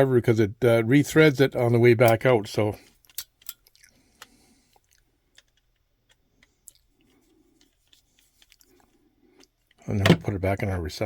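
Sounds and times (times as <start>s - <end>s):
small metal clicks and scraping: 2.9s - 9.8s.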